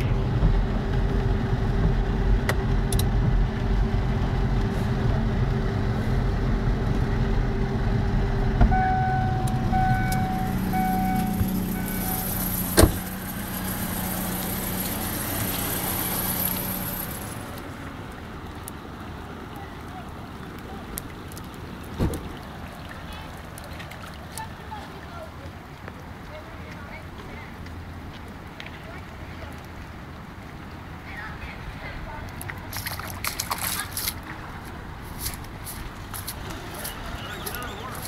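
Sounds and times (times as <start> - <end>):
car engine rumble: 0.0 - 25.3
chime beeping: 8.7 - 12.7.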